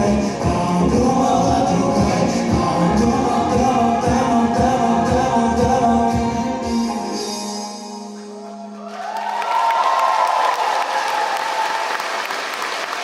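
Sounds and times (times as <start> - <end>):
audience applause and cheering: 8.2 - 13.0.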